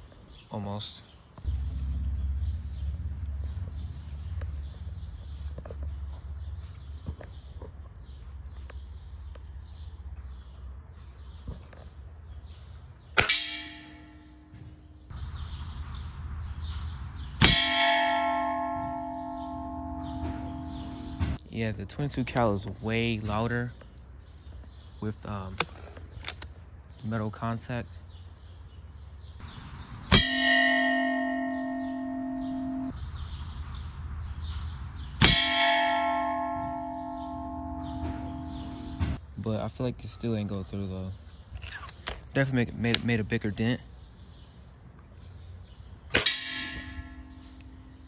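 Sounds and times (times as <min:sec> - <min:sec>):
metal pan ringing: 0:13.2 - 0:15.0, 0:30.1 - 0:32.9, 0:46.2 - 0:48.0
pellets striking metal target: 0:13.2 - 0:15.0, 0:17.4 - 0:21.4, 0:30.1 - 0:32.9, 0:46.1 - 0:48.0.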